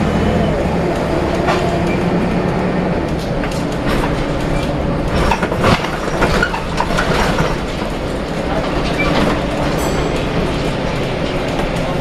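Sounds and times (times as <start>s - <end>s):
bus engine drone: 0.0s - 12.0s
body rattles and knocks: 3.2s - 12.0s.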